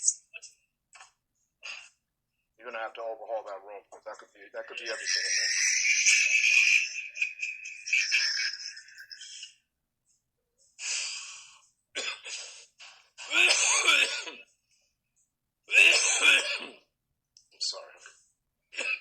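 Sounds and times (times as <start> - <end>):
person clearing throat: 13.2 - 14.4, 15.7 - 16.8
person coughing: 13.3 - 14.4.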